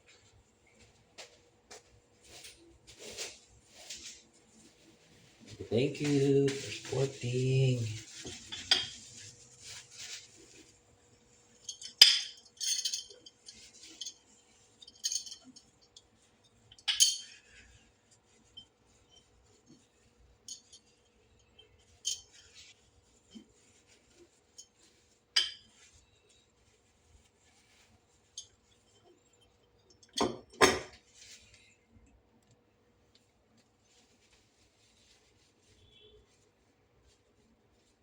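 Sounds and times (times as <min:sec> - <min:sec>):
utensils clinking on glassware and dishes: 0:11.6 - 0:16.0, 0:16.7 - 0:17.6, 0:20.4 - 0:22.5.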